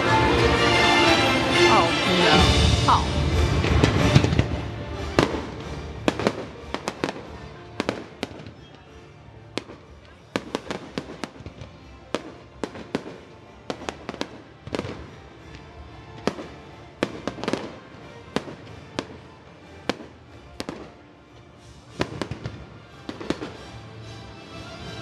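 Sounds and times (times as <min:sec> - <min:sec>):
background music: 0:00.0 - 0:25.0
fireworks bursting: 0:02.9 - 0:15.6, 0:21.6 - 0:23.6.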